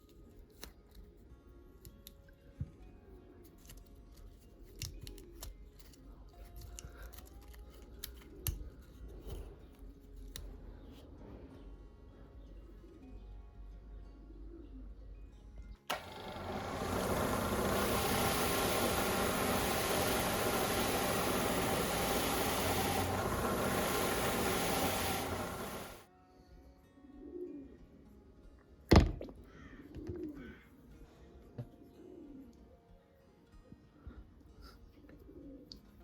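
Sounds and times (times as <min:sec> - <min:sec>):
power tool hissing: 0:15.9 - 0:26.0
pigeon cooing: 0:29.8 - 0:30.6, 0:34.9 - 0:35.9.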